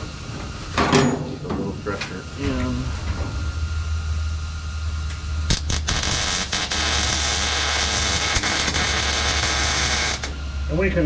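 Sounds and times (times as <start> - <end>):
low hum: 1.8 - 11.0
welding arc crackling hiss: 3.8 - 10.4.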